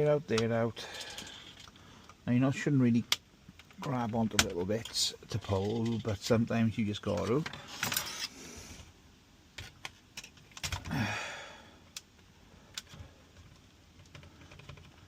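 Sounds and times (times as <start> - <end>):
person sighing: 10.8 - 11.8.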